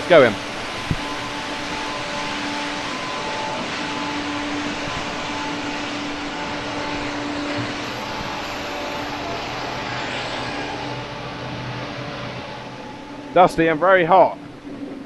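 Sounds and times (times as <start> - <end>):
farm machinery droning: 0.0 - 15.0.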